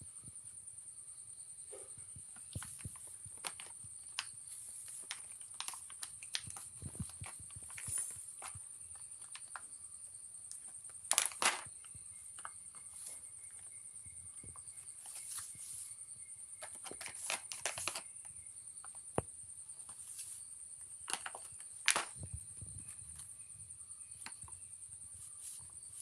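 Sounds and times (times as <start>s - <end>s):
high insect trill: 0.0s - 26.0s
plastic packet crinkling: 2.5s - 8.6s, 16.6s - 18.0s.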